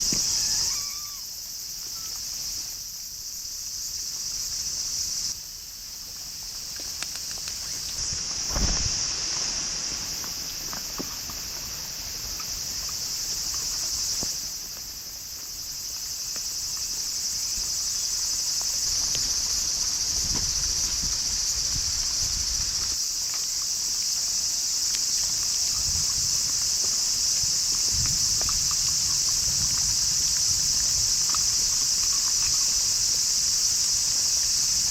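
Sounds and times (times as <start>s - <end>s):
crickets chirping: 0.0s - 34.9s
soft patter: 6.0s - 23.5s.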